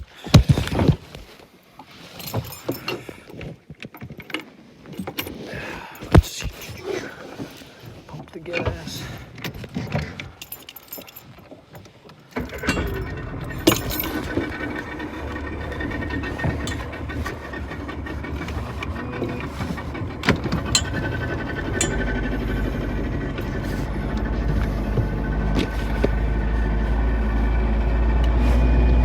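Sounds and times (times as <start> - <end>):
outboard motor running: 12.3 - 29.0
sharp knocks and rattles: 12.4 - 26.1.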